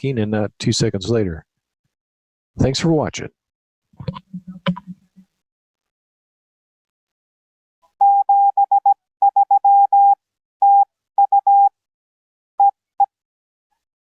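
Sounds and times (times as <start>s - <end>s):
morse code tone: 8.0s - 11.7s.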